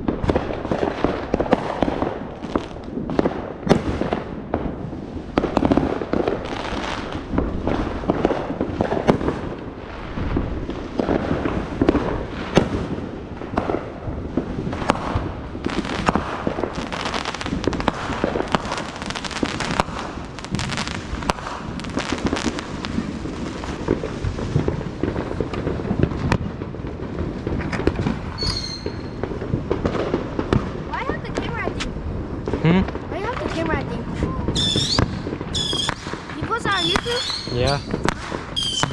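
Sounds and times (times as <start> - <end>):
fireworks bangs and crackling: 0.0 - 38.9
high rising firework whistle: 28.3 - 29.2, 34.2 - 38.9.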